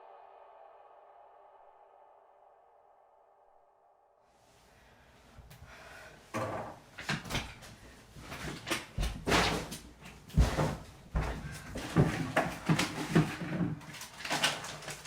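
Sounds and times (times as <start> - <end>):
irregular knocks and clatters: 6.4 - 15.0
heavy thumps: 9.0 - 12.2.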